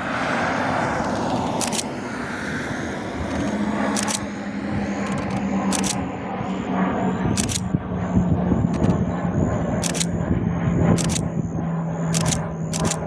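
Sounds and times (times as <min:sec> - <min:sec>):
sharp clicks: 0:01.1 - 0:02.0, 0:03.3 - 0:04.4, 0:05.0 - 0:06.1, 0:07.3 - 0:07.7, 0:08.6 - 0:09.1, 0:09.8 - 0:10.2, 0:10.9 - 0:11.4, 0:12.1 - 0:13.0.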